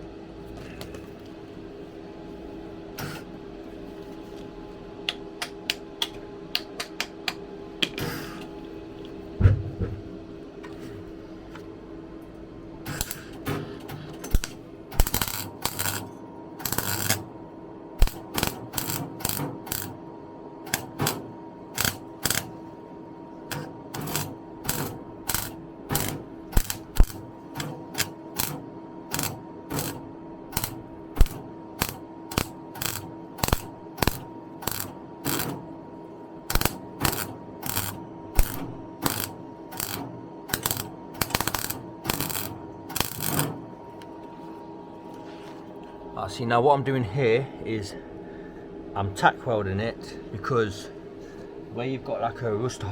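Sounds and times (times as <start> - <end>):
welder hum: 2.3 - 3.4, 12.8 - 44.1
crackling tack welds: 3.0 - 3.3, 12.8 - 17.3, 18.0 - 20.0, 20.6 - 22.6, 23.5 - 35.6, 36.4 - 43.6.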